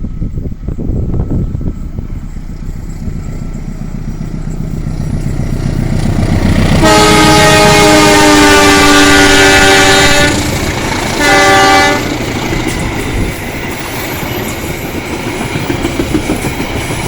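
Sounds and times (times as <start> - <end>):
train rumbling and clattering: 0.0 - 17.0
multi-tone train horn: 5.7 - 12.5.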